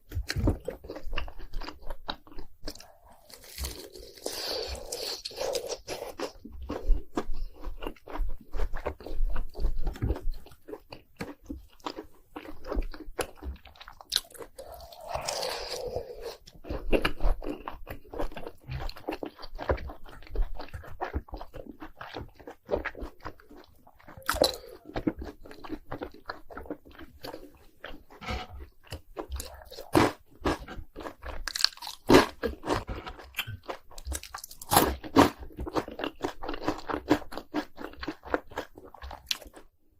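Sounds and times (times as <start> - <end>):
chewing: 0.1 - 39.7
crunchy bites into fried snacks: 0.2 - 9.0, 28.9 - 39.7.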